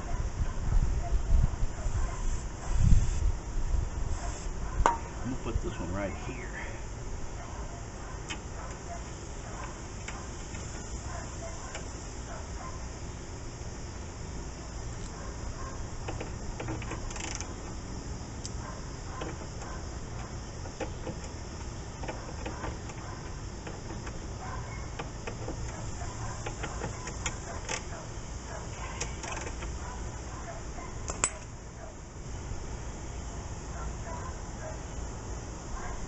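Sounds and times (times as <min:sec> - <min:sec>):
steady low hum: 0:00.0 - 0:36.0
tools clicking and scraping on metal: 0:28.8 - 0:29.8, 0:31.1 - 0:31.5.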